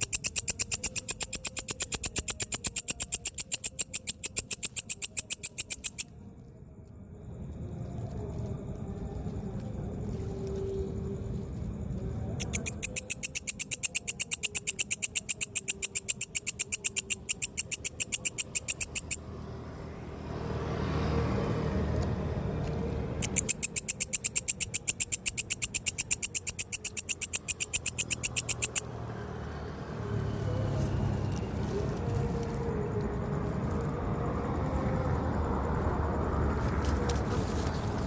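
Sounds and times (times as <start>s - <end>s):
katydid calling in pulses: 0.0s - 6.1s, 12.4s - 19.2s, 23.2s - 29.1s
steady low rumble: 6.2s - 12.5s.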